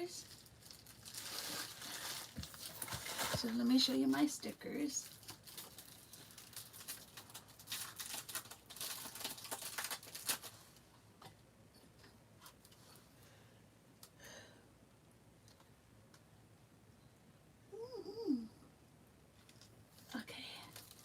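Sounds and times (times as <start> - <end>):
packaging rustling and crinkling: 0.0 - 10.9, 20.7 - 21.0.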